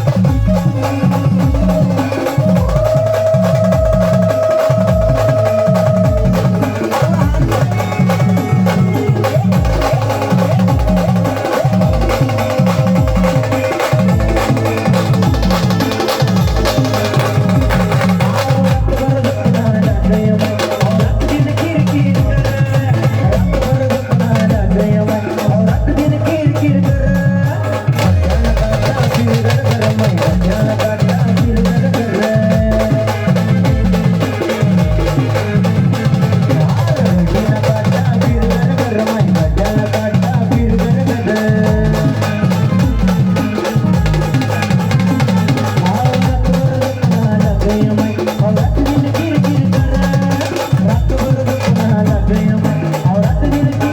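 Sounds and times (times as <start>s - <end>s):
heavy drum beat: 0.0s - 53.9s
brass band playing: 8.6s - 18.7s, 42.3s - 46.5s.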